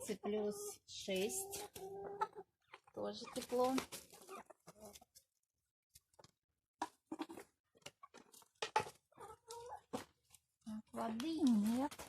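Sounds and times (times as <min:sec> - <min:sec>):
hens clucking softly: 0:00.0 - 0:05.3, 0:06.1 - 0:10.2.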